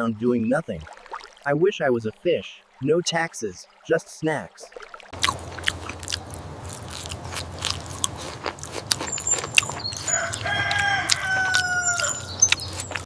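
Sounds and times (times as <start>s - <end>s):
steady low hum: 5.2s - 9.9s
sharp clicks and crunches: 5.2s - 13.0s.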